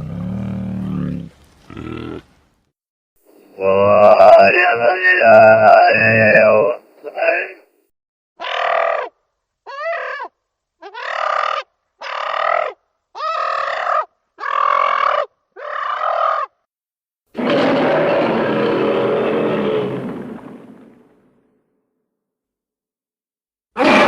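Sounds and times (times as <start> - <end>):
long rough creature cry: 23.8 - 24.0.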